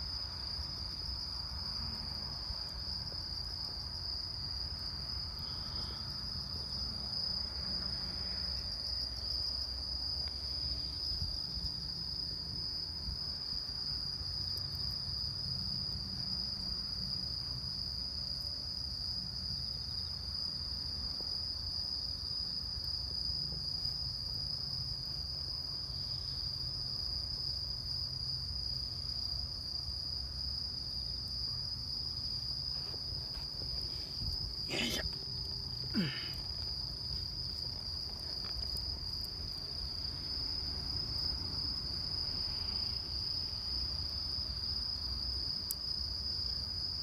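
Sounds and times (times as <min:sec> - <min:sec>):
insects trilling: 0:02.8 - 0:12.3, 0:30.9 - 0:47.0.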